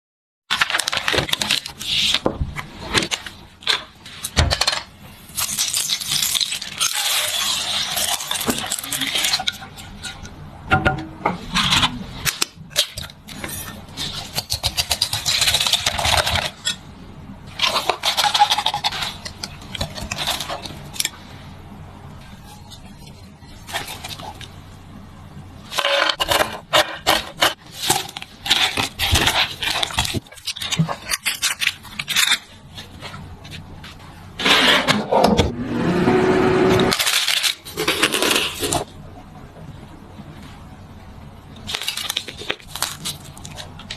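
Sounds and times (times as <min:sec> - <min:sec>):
rustling or scraping: 0:25.6 - 0:35.4.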